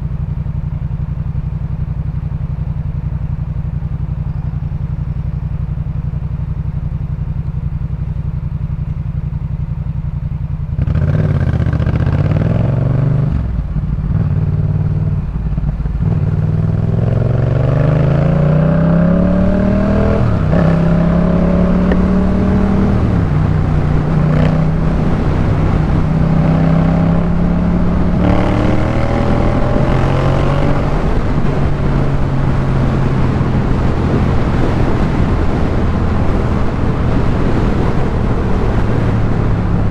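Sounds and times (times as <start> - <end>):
motorcycle engine idling: 0.0 - 17.2
motorcycle accelerating: 0.0 - 39.9.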